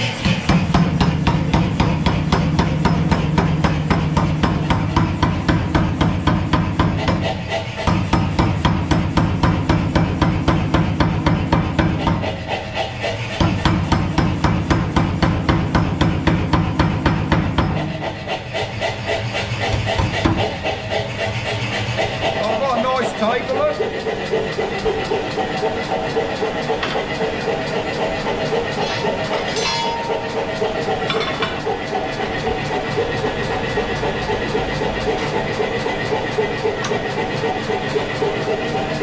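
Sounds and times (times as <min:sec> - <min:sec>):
power hammer striking hot steel: 0:00.1 - 0:12.4, 0:13.4 - 0:18.0, 0:26.6 - 0:33.1, 0:36.7 - 0:38.1.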